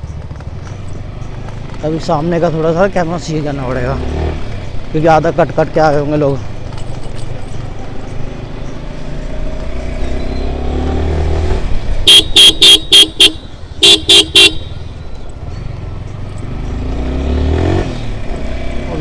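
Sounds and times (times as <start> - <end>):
motorcycle engine revving: 0.0 - 19.0
horn short toots: 12.0 - 14.9.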